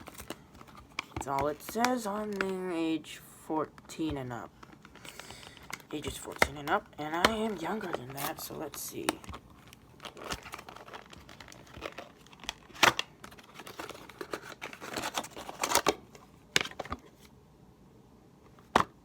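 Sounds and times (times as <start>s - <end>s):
packaging crinkling and rustling: 0.0s - 2.7s, 3.7s - 17.3s.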